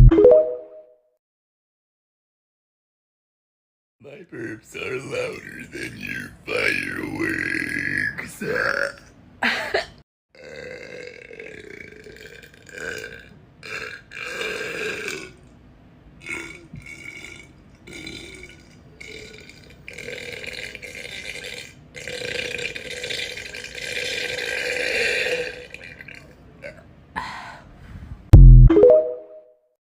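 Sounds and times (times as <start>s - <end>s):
person burping: 10.4s - 15.4s.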